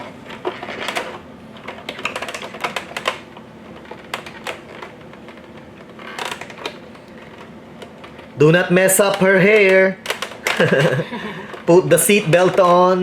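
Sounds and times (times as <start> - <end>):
plastic toy clicks and taps: 1.9 - 3.2, 4.1 - 4.9, 9.0 - 13.0.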